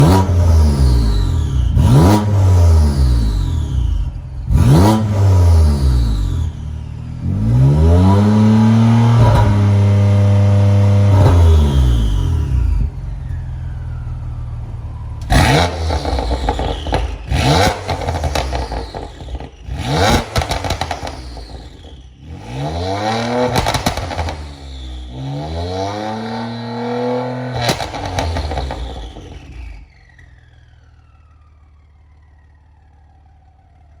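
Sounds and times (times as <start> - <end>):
car engine revving: 0.0 - 30.3
exhaust cracks and pops: 15.1 - 22.1, 23.4 - 24.8, 27.6 - 30.2.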